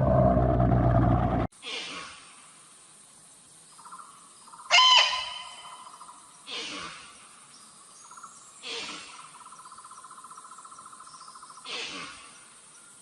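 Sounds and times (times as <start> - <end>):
animal hissing screech calls: 1.6 - 2.4, 4.7 - 5.9, 6.5 - 7.2, 8.6 - 9.3, 11.6 - 12.5.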